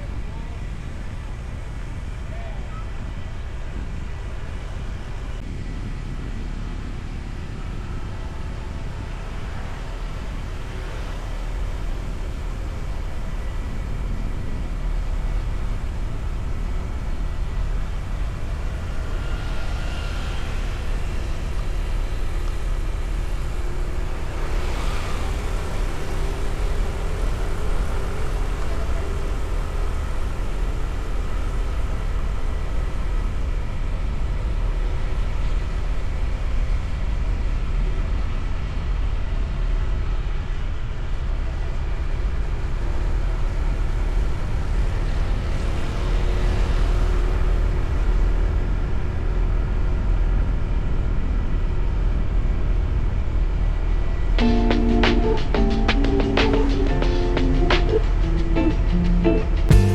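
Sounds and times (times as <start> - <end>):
wind noise: 0.0 - 41.0
vehicle rumble on road: 0.0 - 59.9.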